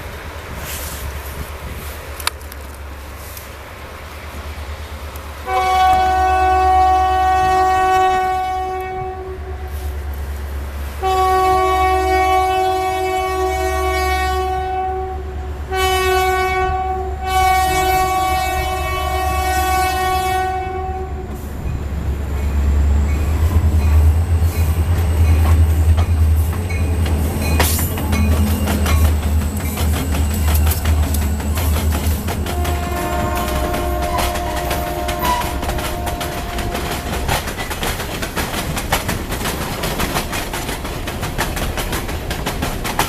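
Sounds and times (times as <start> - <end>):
locomotive engines rumbling: 0.0 - 43.0
locomotive air horn: 5.4 - 10.0, 11.0 - 21.4, 28.6 - 37.5.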